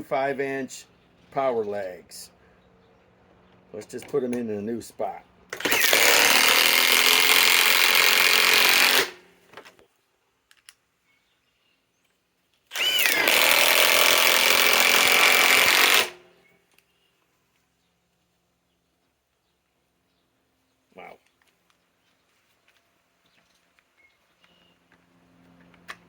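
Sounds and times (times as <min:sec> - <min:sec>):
impact wrench hammering screws: 0:05.5 - 0:09.2, 0:12.7 - 0:16.3.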